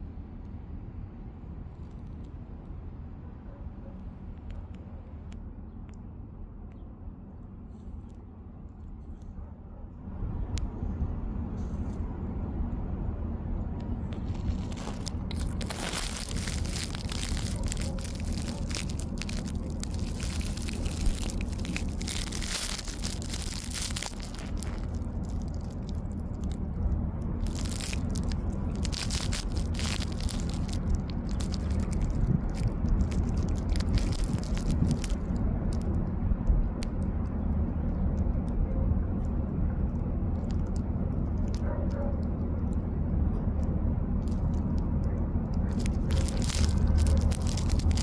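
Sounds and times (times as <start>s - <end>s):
low rumble: 10.1s - 48.0s
crunching and crackling: 13.8s - 38.6s, 39.2s - 42.8s, 43.4s - 48.0s.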